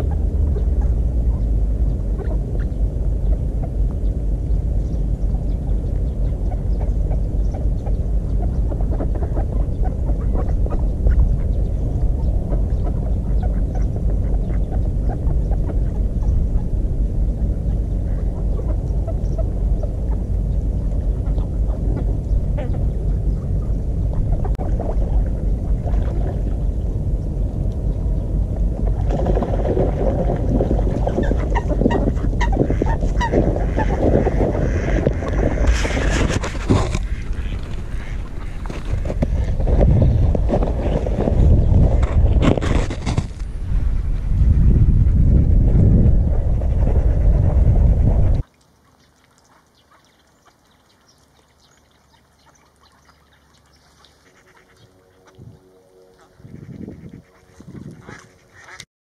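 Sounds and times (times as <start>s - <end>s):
wind on microphone: 0.0s - 48.4s, 54.7s - 58.9s
ducks quacking: 5.7s - 16.7s, 30.5s - 39.8s, 52.4s - 55.5s, 56.1s - 58.9s.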